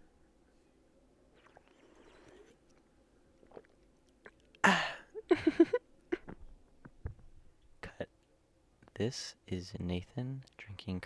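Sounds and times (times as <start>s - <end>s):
person drinking: 1.3s - 5.6s.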